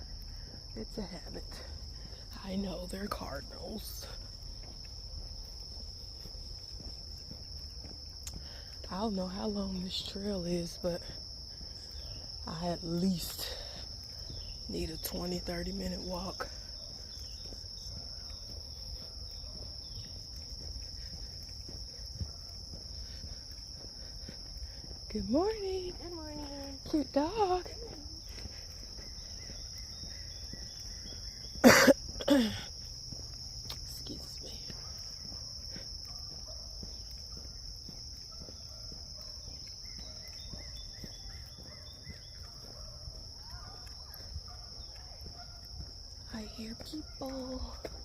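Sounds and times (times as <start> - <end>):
soft footsteps: 0.0 - 10.4, 11.0 - 48.0
birds chirping: 11.5 - 33.1, 36.0 - 48.0.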